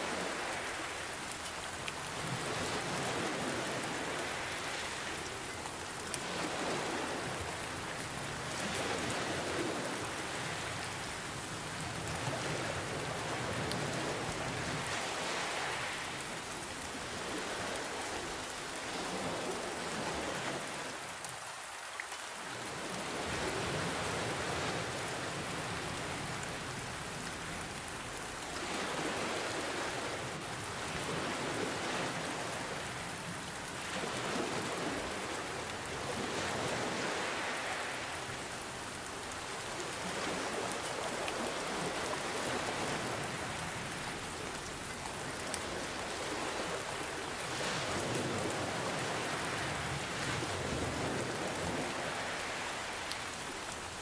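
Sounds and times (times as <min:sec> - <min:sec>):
ocean waves breaking: 0:00.0 - 0:11.2, 0:11.9 - 0:21.1, 0:33.8 - 0:44.5, 0:45.3 - 0:53.9
steady rain: 0:00.0 - 0:54.0.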